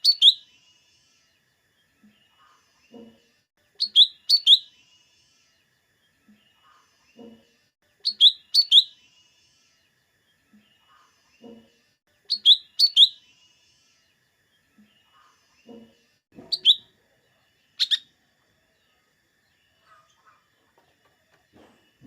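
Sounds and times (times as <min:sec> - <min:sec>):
soft bird calls: 0:02.0 - 0:03.2, 0:06.2 - 0:09.8, 0:10.4 - 0:14.1, 0:14.7 - 0:18.1, 0:19.6 - 0:22.0
bird singing sharp whistles: 0:16.5 - 0:16.8.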